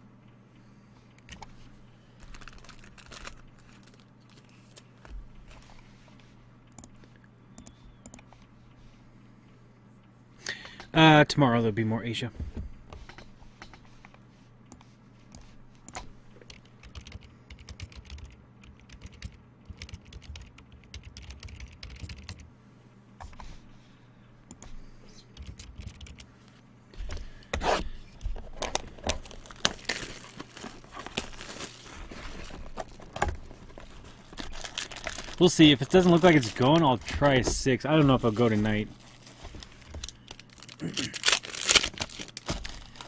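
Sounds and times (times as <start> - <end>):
wrappers crinkling and rustling: 2.2 - 5.8, 28.3 - 43.0
typing on computer keyboard: 15.9 - 22.4, 25.4 - 26.3.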